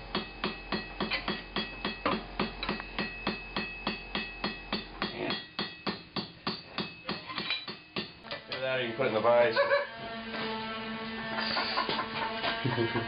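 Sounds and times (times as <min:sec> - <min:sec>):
hammer striking steel on anvil: 0:00.1 - 0:08.6.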